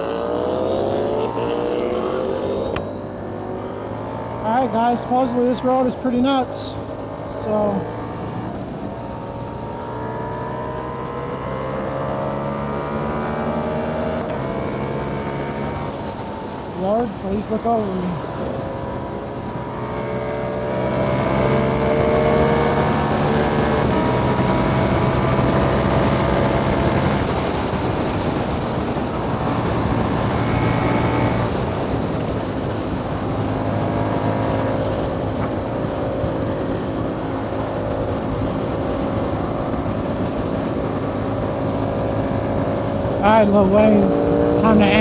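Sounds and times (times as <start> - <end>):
motorcycle engine accelerating: 0.0 - 45.0
wind noise: 0.0 - 45.0.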